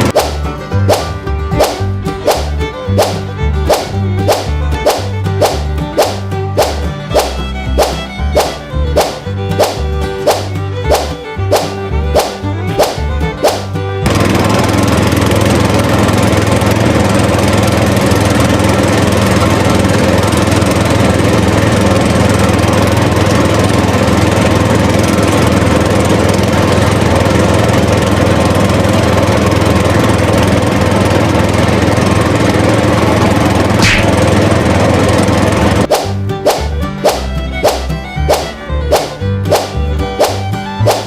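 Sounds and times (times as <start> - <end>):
small motor droning: 10.6 - 35.9.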